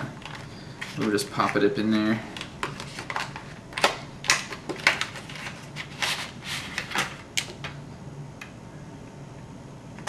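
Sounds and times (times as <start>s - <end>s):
plastic and cardboard rustling: 0.0s - 7.6s.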